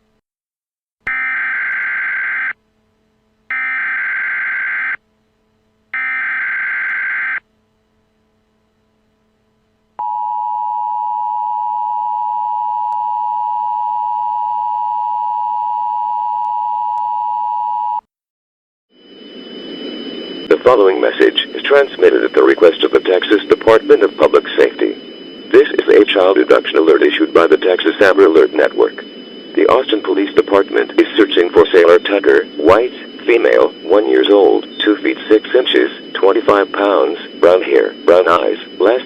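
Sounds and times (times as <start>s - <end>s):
buzzing digital data tones: 19.0s - 39.0s.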